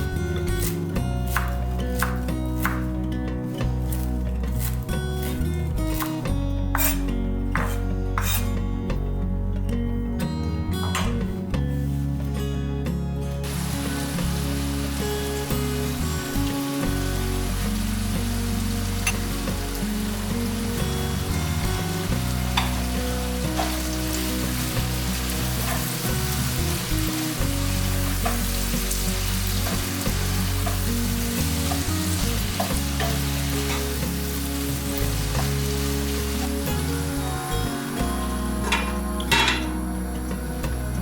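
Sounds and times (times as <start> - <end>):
background music sustained notes: 0.0 - 41.0
food sizzling in a pan: 6.8 - 7.0, 13.4 - 40.9.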